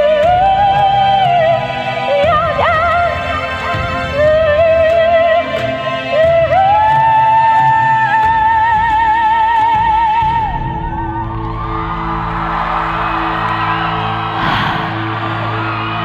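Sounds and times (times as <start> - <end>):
backing music: 0.0 - 16.0
audience cheering and whooping: 11.0 - 16.0.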